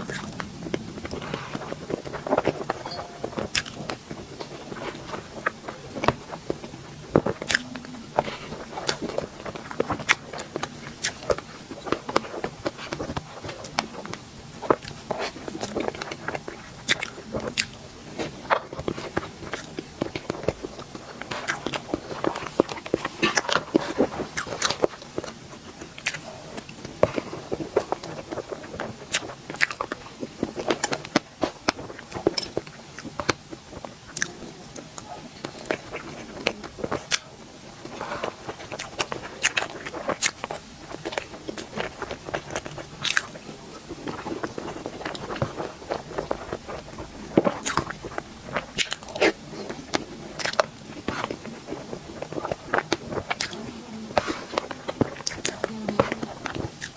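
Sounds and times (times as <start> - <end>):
crunchy bites and chewing: 0.0 - 56.9
mouth clicks: 7.4 - 8.0.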